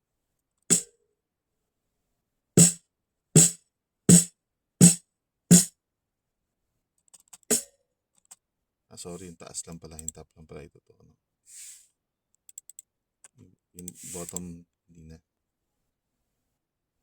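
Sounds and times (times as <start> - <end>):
snare drum hits: 2.6 - 2.8, 3.4 - 5.7.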